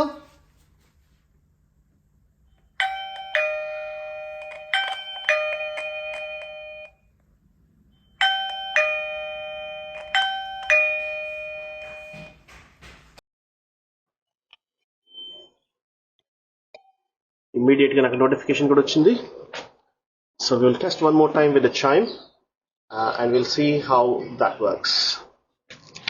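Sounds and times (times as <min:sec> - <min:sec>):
doorbell chime tune: 0:02.5 - 0:07.0, 0:08.0 - 0:12.6.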